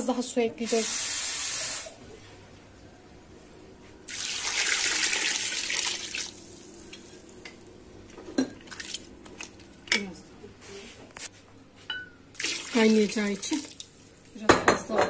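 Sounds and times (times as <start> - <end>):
water pouring into a pot: 4.1 - 7.1, 12.4 - 14.2.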